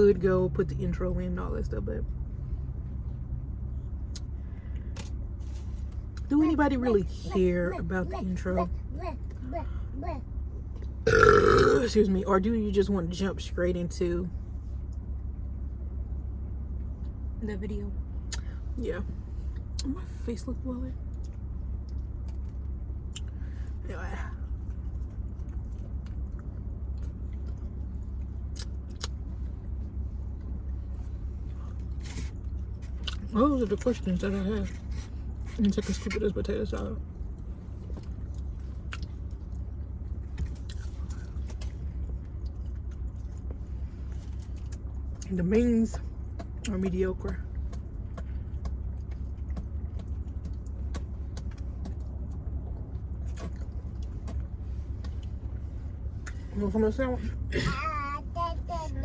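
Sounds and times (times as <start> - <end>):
car engine idling: 0.0 - 59.0
person chewing food: 11.1 - 11.8.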